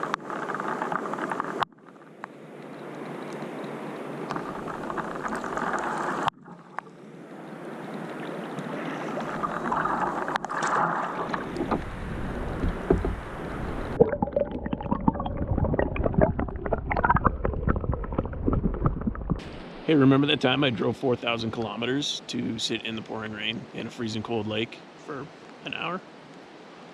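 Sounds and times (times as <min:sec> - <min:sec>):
water splashing and gurgling: 0:00.0 - 0:20.0
rain pattering: 0:04.3 - 0:06.9.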